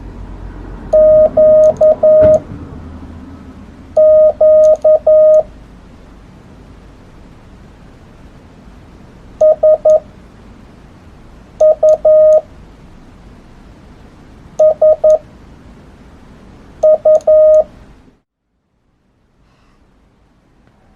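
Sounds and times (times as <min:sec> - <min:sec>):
morse code beeps: 0:00.9 - 0:02.4, 0:04.0 - 0:05.5, 0:09.4 - 0:10.0, 0:11.6 - 0:12.4, 0:14.6 - 0:15.2, 0:16.8 - 0:17.7.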